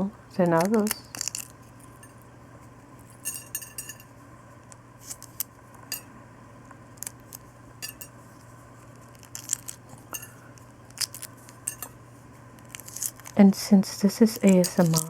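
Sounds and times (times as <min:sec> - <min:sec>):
low steady hum: 0:00.0 - 0:15.0
eggshell cracking while peeled: 0:00.5 - 0:02.0, 0:06.9 - 0:07.5, 0:08.8 - 0:11.7, 0:12.6 - 0:13.4, 0:14.5 - 0:15.0.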